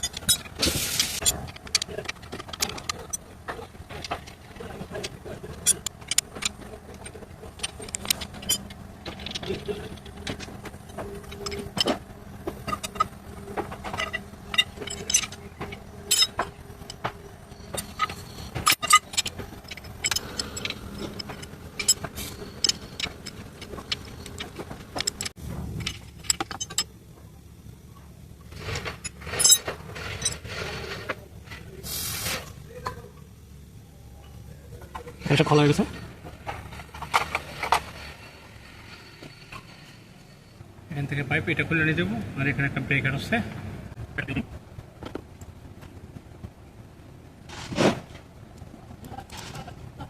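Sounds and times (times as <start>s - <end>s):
metal tools clinking on bolts: 0.0s - 27.0s, 28.6s - 30.6s
short hiss: 31.8s - 32.6s.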